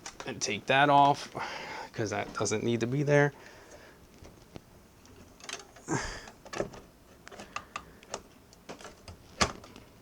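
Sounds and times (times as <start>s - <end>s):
clicks and knocks of hardware: 5.0s - 9.9s.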